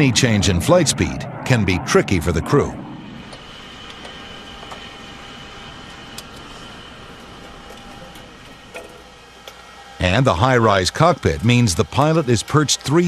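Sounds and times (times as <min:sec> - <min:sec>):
aircraft cabin drone: 0:00.0 - 0:13.0
thin high whines: 0:00.7 - 0:13.0.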